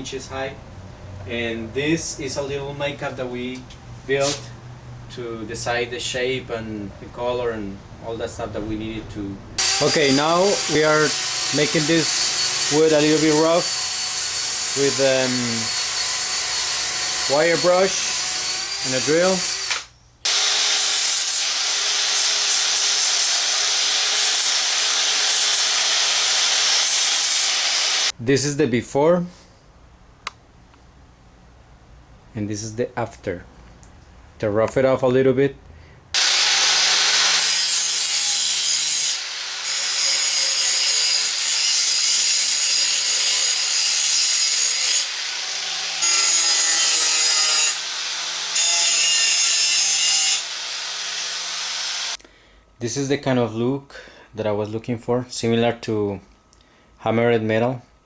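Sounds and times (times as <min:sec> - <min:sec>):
wire brush drill scratching wood: 0:09.6 - 0:28.1, 0:36.2 - 0:52.2.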